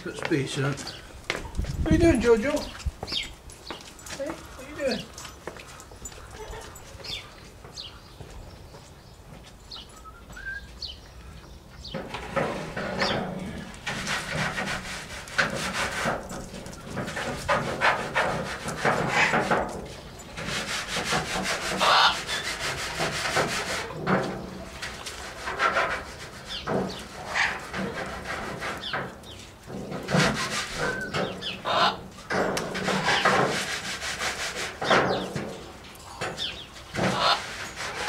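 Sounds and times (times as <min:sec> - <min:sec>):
scraping and rubbing strokes: 0:11.9 - 0:38.0.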